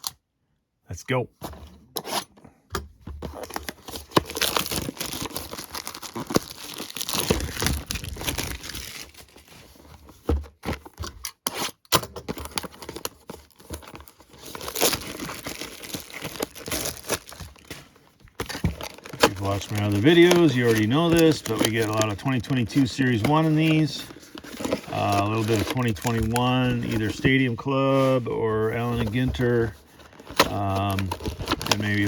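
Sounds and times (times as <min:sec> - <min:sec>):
plastic wrapping torn and crinkled: 0:03.5 - 0:09.5, 0:12.3 - 0:27.9, 0:28.8 - 0:32.0.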